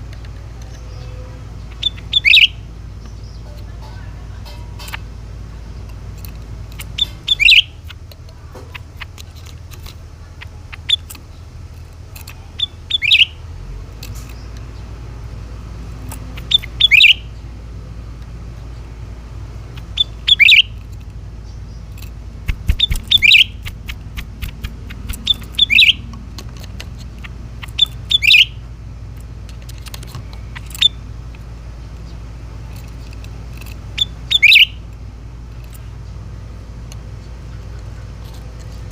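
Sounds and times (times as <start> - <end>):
steady low hum: 0.0 - 38.9
bird chirping: 0.1 - 14.9, 15.9 - 17.5, 19.6 - 28.7, 29.8 - 33.0, 33.8 - 34.9.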